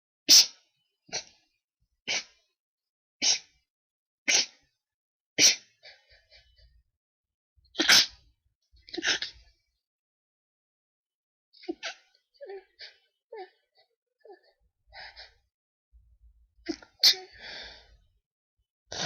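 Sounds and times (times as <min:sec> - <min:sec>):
person sneezing: 0:00.3 - 0:00.6, 0:03.2 - 0:03.5, 0:04.3 - 0:04.6, 0:05.4 - 0:05.7, 0:07.8 - 0:08.2, 0:16.7 - 0:17.4.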